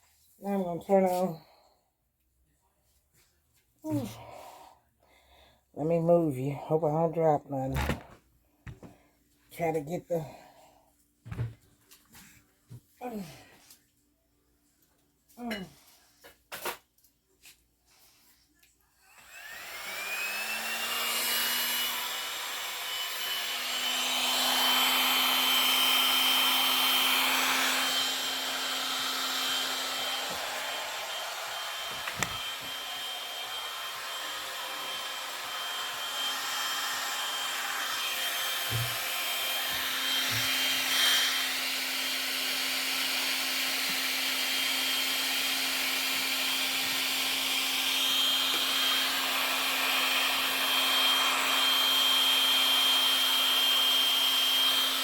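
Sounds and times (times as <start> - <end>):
electric blower whining: 19.0 - 55.0.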